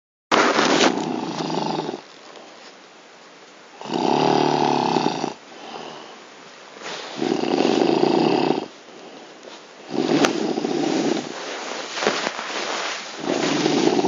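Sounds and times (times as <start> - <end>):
man snoring loudly: 1.0 - 2.0, 3.8 - 5.9, 7.2 - 8.7, 9.9 - 11.3, 13.3 - 14.0.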